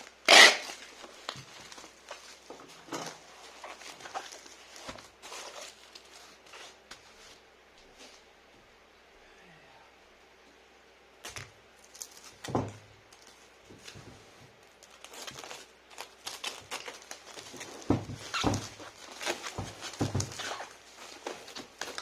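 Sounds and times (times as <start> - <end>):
packaging rustling: 0.0 - 7.4, 11.8 - 22.0
knocks and thunks of packing: 12.3 - 13.0, 13.7 - 14.6, 17.2 - 22.0.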